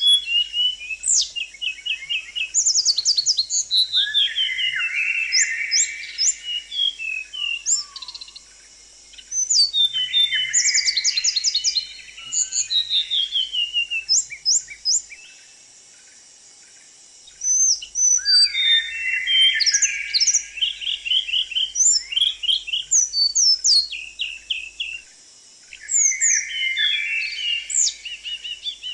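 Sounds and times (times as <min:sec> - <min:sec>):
songbird chirping and trilling: 0:00.0 - 0:28.9.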